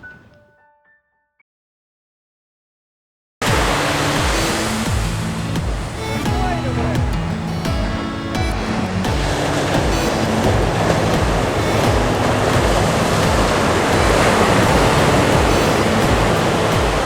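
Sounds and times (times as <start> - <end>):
sea waves washing onshore: 3.4 - 17.0
faint background music: 3.5 - 17.0.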